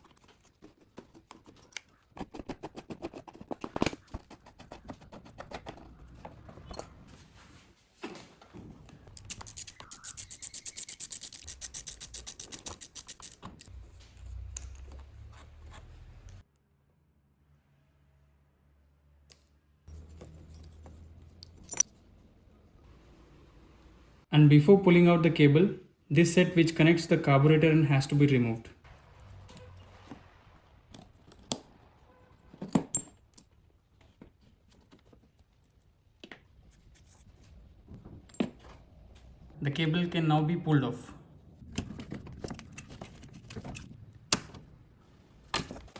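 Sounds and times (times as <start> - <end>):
rubbing and handling noise: 0.0 - 16.4, 28.9 - 39.5, 41.5 - 44.3
small metal parts clinking: 9.2 - 15.0, 21.4 - 21.9, 32.6 - 33.6.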